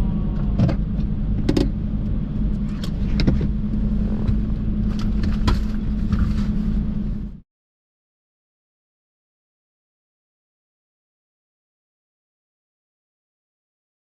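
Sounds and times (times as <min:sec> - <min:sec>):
low engine hum: 0:00.0 - 0:07.4
sharp clicks and knocks: 0:00.4 - 0:03.6.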